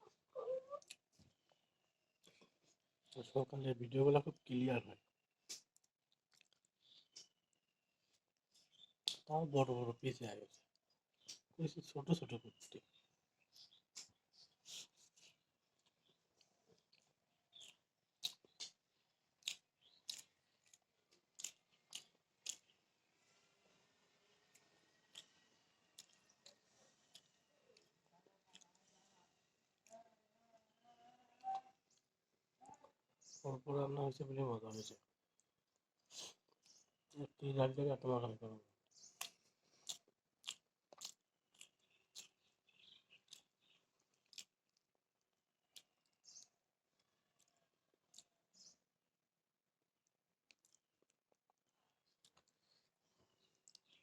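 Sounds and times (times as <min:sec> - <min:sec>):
person chewing food: 0:00.1 - 0:03.2, 0:05.4 - 0:09.3, 0:10.7 - 0:11.5, 0:13.5 - 0:28.9, 0:35.3 - 0:37.2, 0:38.9 - 0:48.7, 0:50.4 - 0:54.0
wet mouth clicks and smacks: 0:05.4 - 0:07.4, 0:08.8 - 0:09.3, 0:11.2 - 0:11.5, 0:13.9 - 0:16.0, 0:17.6 - 0:18.8, 0:19.4 - 0:22.8, 0:24.6 - 0:25.4, 0:39.2 - 0:42.4.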